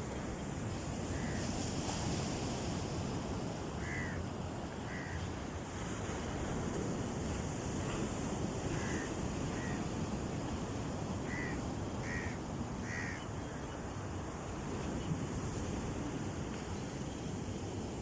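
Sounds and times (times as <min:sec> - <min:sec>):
sea surf: 0:00.0 - 0:18.0
bird calling: 0:11.3 - 0:13.3.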